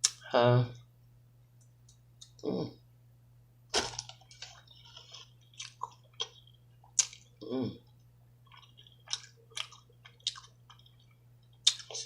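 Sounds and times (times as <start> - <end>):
person humming: 2.4 - 2.8, 7.4 - 7.8
food crunching: 3.8 - 12.0.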